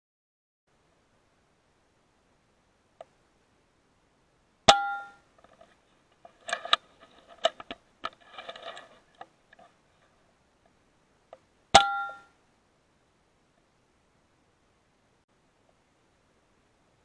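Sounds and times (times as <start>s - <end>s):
rifle action clicking and rattling: 5.4s - 9.7s.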